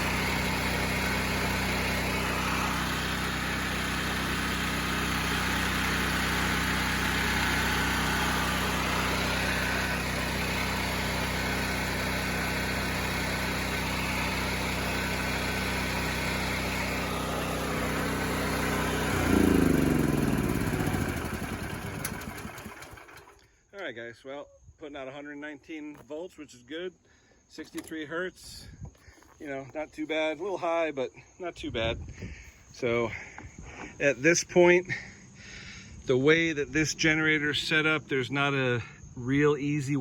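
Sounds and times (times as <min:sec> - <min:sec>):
generator petrol engine running: 0:00.0 - 0:23.5.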